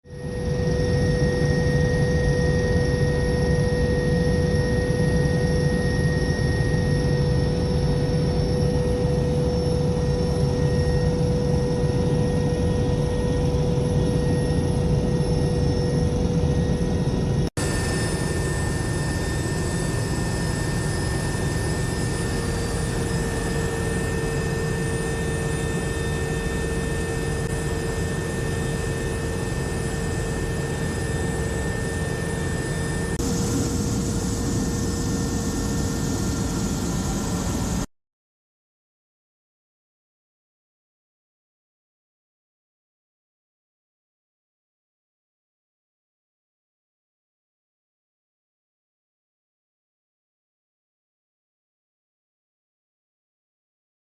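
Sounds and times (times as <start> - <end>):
aircraft engine drone: 0.1 - 37.9.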